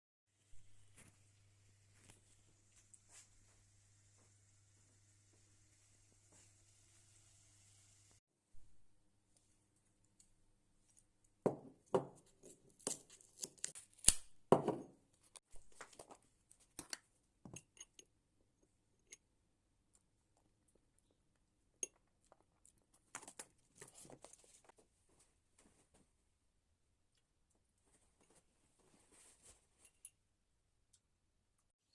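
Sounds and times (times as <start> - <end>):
rustling: 27.8 - 30.1.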